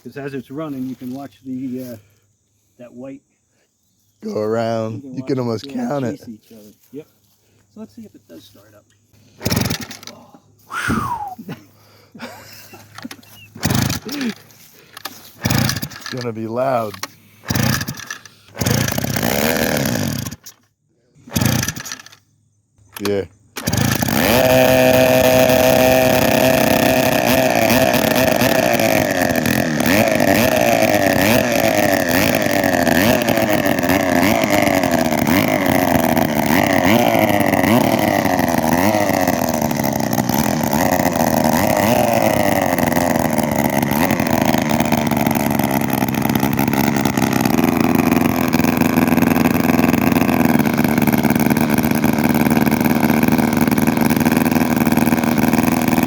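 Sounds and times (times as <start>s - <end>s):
chainsaw engine revving: 8.6s - 22.3s, 22.9s - 56.0s.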